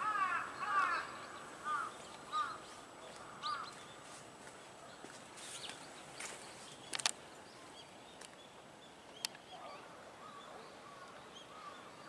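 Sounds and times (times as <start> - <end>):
crow cawing: 0.0 - 2.6.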